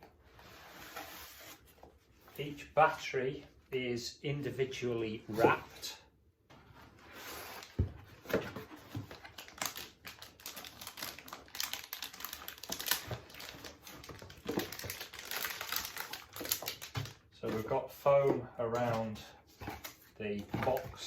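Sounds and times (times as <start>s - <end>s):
packaging crackling and rustling: 7.6s - 17.7s.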